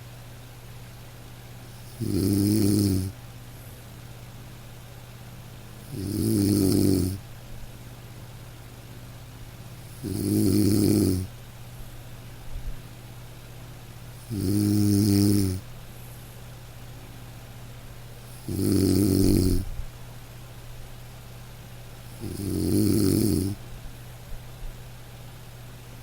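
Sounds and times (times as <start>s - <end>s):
quiet breathing: 1.7s - 3.1s, 9.8s - 11.3s, 18.2s - 19.8s, 22.1s - 23.6s
loud rasping snores: 1.8s - 3.1s, 5.9s - 7.2s, 9.9s - 11.3s, 14.2s - 15.6s, 18.3s - 19.7s, 22.1s - 23.6s.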